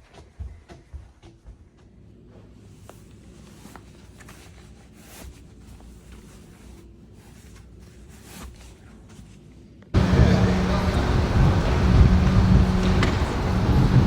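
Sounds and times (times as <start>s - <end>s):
footsteps on stairs: 0.0s - 2.2s, 10.0s - 14.0s
low steady hum: 2.7s - 14.0s.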